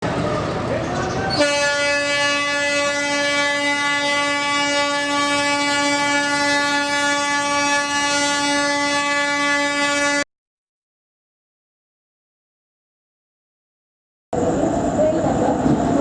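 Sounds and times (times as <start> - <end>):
locomotive horn blast: 1.3 - 10.3.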